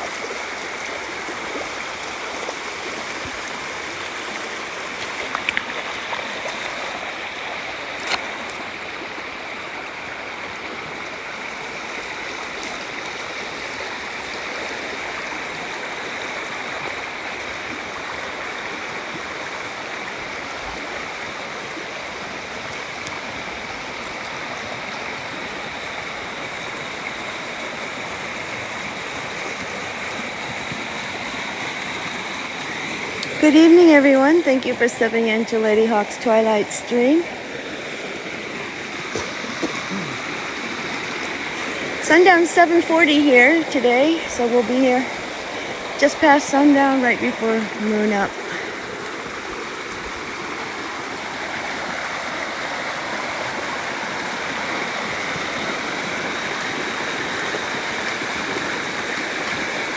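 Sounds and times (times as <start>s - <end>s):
river water rushing: 0.0s - 59.9s.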